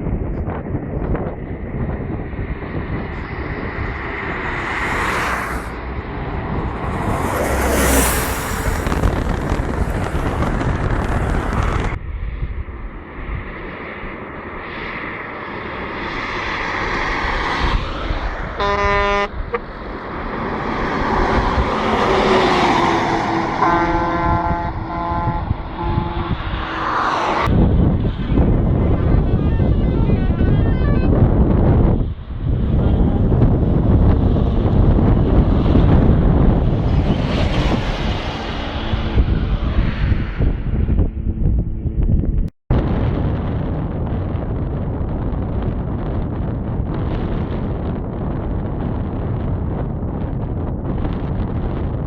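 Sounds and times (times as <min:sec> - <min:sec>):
wind and road noise: 0:00.0 - 0:52.0
bus air horn blasts: 0:18.6 - 0:19.7, 0:22.8 - 0:27.4.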